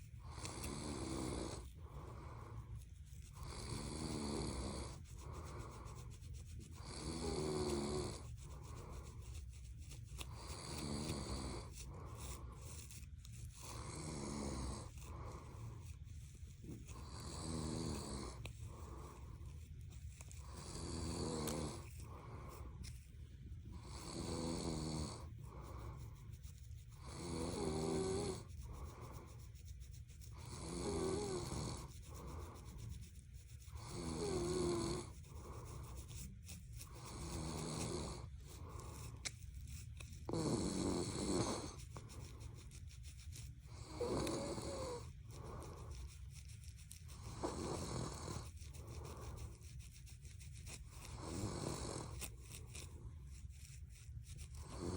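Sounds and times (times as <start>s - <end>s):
person snoring: 0.2s - 2.5s, 3.4s - 5.8s, 6.8s - 8.2s, 10.3s - 12.6s, 13.7s - 15.6s, 16.9s - 19.4s, 20.4s - 22.6s, 23.7s - 26.0s, 27.0s - 29.2s, 30.4s - 32.5s, 33.7s - 35.8s, 37.0s - 39.0s, 40.2s - 41.8s, 43.7s - 46.0s, 47.2s - 49.5s, 51.1s - 52.2s, 54.6s - 54.9s.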